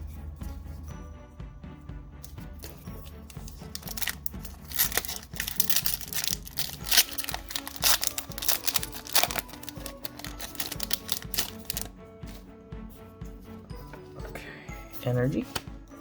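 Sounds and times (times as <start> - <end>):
background music: 0.0 - 16.0
foil wrapper crinkling and tearing: 3.6 - 11.9.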